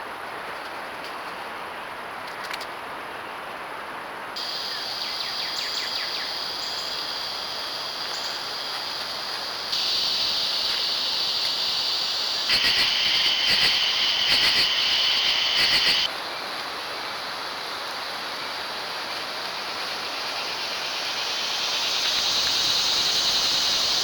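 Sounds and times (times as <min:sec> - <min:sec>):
high-pitched insect chorus: 0:04.4 - 0:24.0
low pulsing insect calls: 0:04.4 - 0:24.0.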